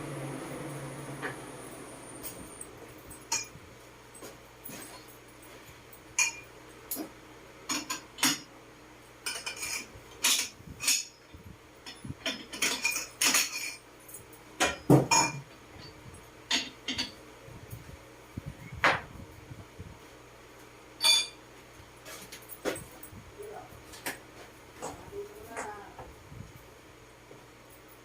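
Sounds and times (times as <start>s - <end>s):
metal tools clinking: 2.2s - 5.2s, 11.8s - 17.2s, 21.0s - 21.4s.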